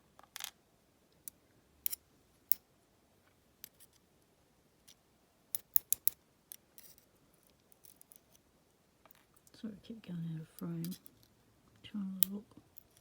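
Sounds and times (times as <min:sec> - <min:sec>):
metallic clicks of lock parts: 0:05.6 - 0:07.0.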